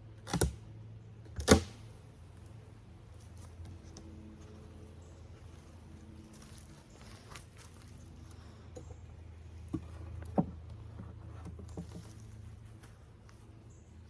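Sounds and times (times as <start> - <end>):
steady low hum: 0.0 - 14.0.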